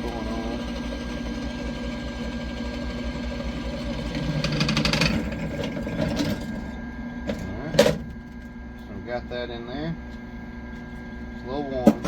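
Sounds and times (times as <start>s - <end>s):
drill bit cutting metal chatter: 0.0s - 6.2s
drill press motor running: 0.0s - 6.9s.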